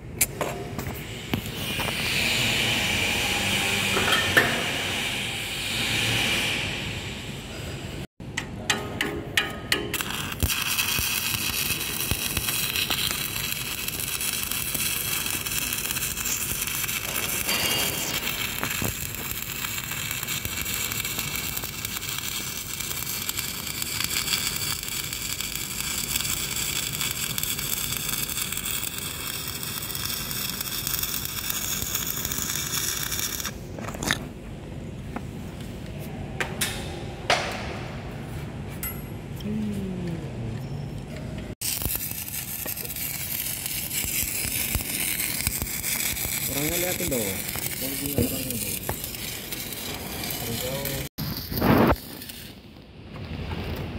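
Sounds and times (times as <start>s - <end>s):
welding arc crackling: 9.7s - 33.6s, 41.6s - 52.7s.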